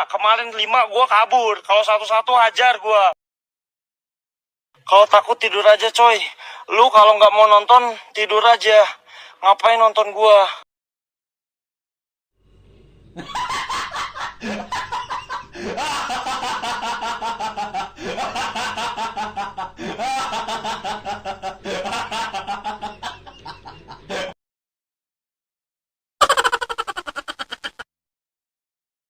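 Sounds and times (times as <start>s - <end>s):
person laughing in pulses: 13.2s - 24.4s, 26.2s - 27.9s.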